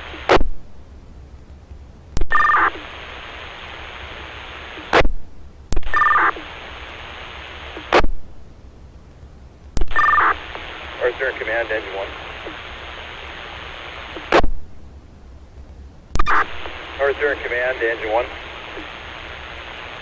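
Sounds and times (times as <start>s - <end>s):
radio open-carrier hiss: 0.0s - 20.0s
radio click and two-tone beep: 2.2s - 2.9s, 5.8s - 6.5s, 9.8s - 12.7s, 13.8s - 14.5s, 16.2s - 19.0s
radio squelch tail burst: 2.2s - 5.2s, 5.8s - 8.1s, 9.8s - 14.6s, 16.2s - 20.0s.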